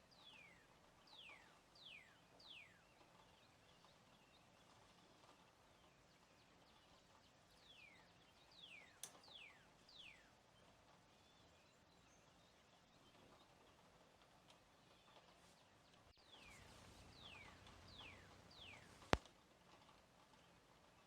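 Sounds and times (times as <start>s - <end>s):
faint hiss: 15.5s - 19.2s
sharp click: 16.4s - 19.2s
short whistled calls sliding down: 16.4s - 19.2s.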